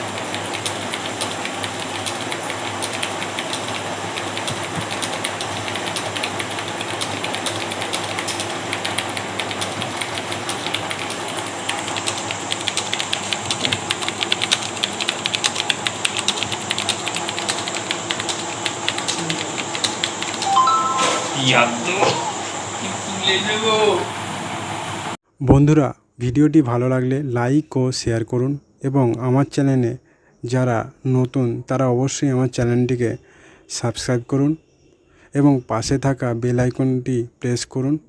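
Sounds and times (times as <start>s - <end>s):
fast keyboard typing: 0.0s - 20.8s
background hum: 25.3s - 38.0s.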